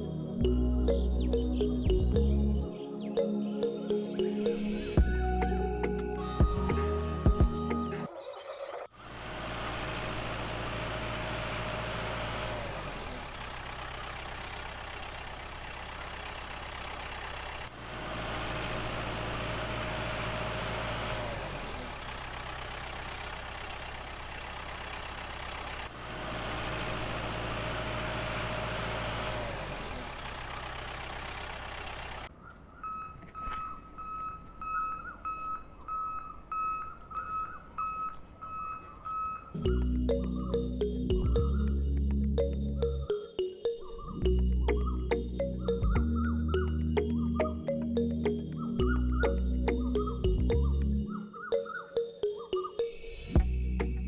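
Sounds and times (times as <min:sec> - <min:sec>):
vehicle engine running: 0:09.0 - 0:43.2, 0:44.2 - 0:51.2, 0:53.4 - 0:54.0
electronic beeping: 0:32.8 - 0:41.5.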